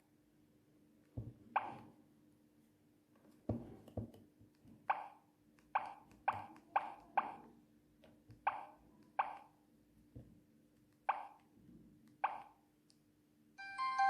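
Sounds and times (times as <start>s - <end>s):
mobile phone ringtone melody: 13.6s - 14.0s.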